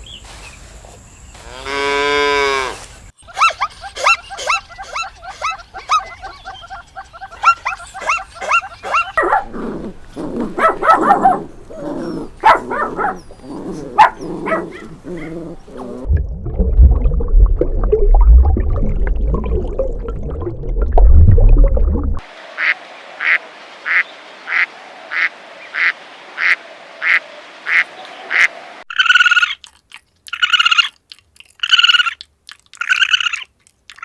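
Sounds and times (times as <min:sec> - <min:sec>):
dog whimpering: 0:03.2 - 0:16.1
puppies yipping and barking: 0:03.2 - 0:16.1.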